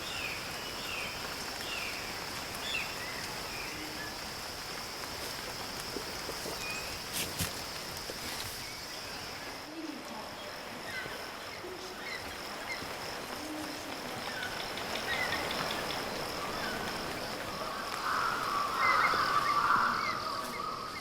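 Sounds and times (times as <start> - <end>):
high insect drone: 0.0 - 21.0
low animal calls: 17.6 - 21.0.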